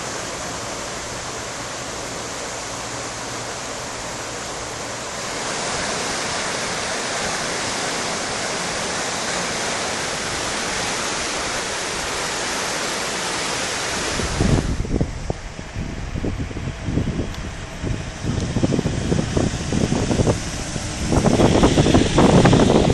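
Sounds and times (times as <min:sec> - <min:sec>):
river water rushing: 0:00.0 - 0:16.3, 0:17.4 - 0:22.9
wind buffeting microphone: 0:03.9 - 0:22.9.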